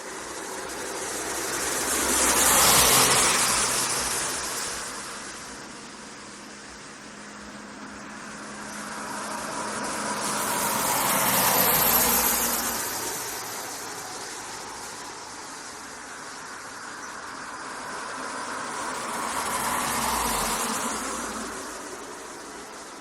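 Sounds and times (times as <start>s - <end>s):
road traffic: 0.0s - 23.0s
vehicle passing close by: 0.1s - 5.6s, 8.1s - 15.0s, 17.4s - 22.9s.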